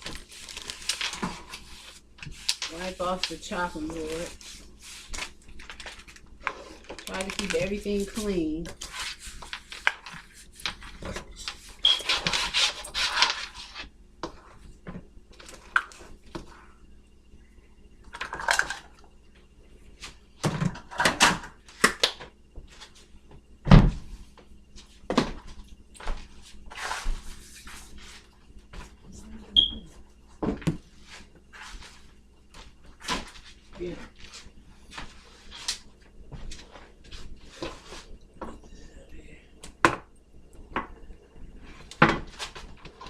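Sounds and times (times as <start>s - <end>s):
wiping across a counter: 1.2s - 5.4s.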